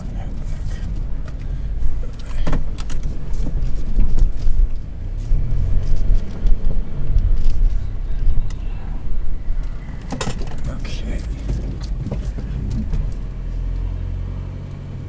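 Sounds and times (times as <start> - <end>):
car engine and road noise: 0.0 - 15.0
knocks and clicks: 9.6 - 13.3.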